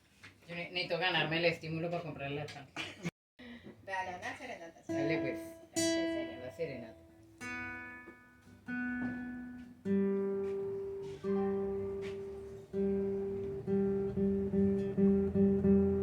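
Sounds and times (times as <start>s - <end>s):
acoustic guitar strumming: 4.9s - 16.0s.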